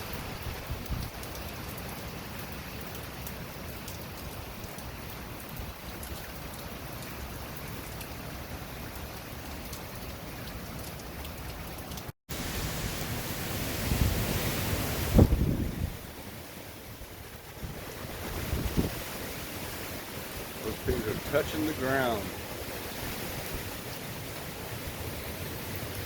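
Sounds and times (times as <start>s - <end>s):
heavy rain hissing: 12.3s - 26.0s.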